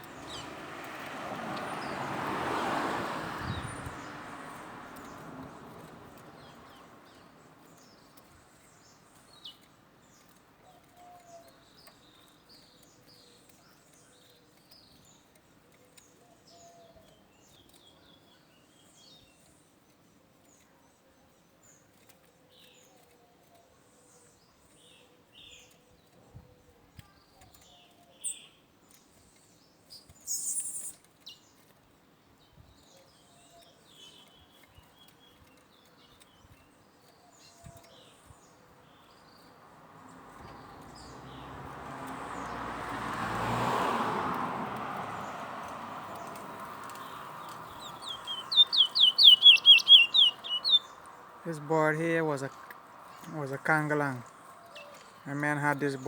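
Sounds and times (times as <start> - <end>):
finches chirping: 0.0 - 0.6, 29.9 - 31.5, 45.2 - 56.0
loud bird call burst: 47.9 - 50.8.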